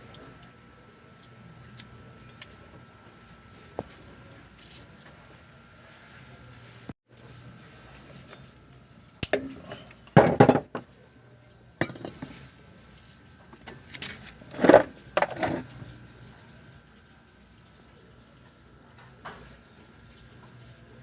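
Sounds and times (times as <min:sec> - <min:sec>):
metal tools clinking and clanking: 0:10.2 - 0:10.8.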